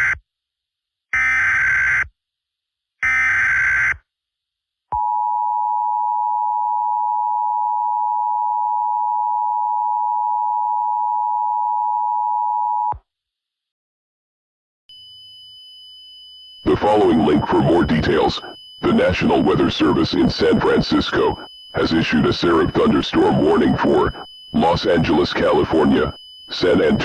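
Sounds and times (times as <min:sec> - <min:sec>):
digital data bursts: 0:16.6 - 0:27.0
two-tone attention signal: 0:16.6 - 0:27.0.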